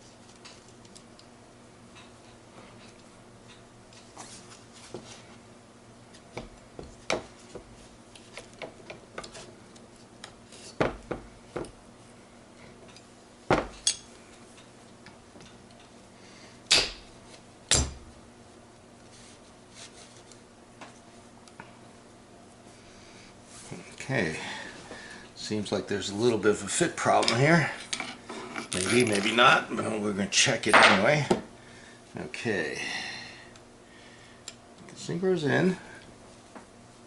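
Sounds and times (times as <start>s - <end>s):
metal gear parts clinking: 28.6s - 29.5s.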